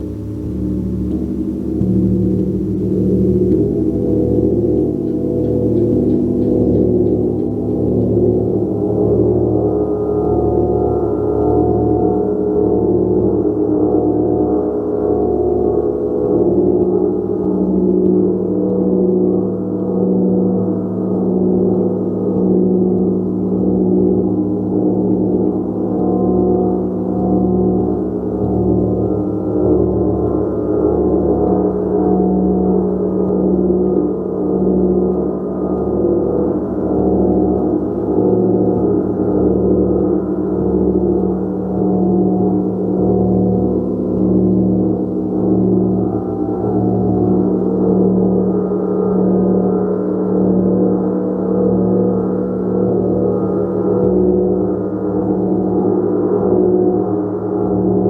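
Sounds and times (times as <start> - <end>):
gong ringing: 0.0 - 8.6.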